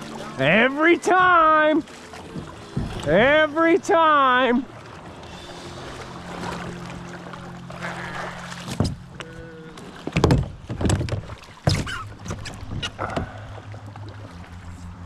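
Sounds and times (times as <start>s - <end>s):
paddle splashing and clunking: 0.0s - 15.0s
low hum: 4.5s - 15.0s.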